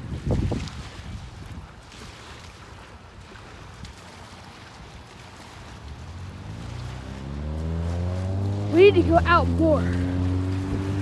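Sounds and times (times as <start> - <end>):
wind buffeting microphone: 0.0 - 11.0
storm waves washing: 3.6 - 11.0.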